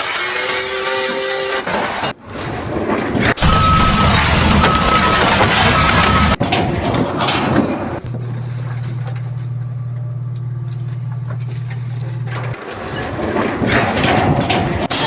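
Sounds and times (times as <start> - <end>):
mechanical clatter: 1.7 - 15.0
machine engine droning: 3.3 - 15.0.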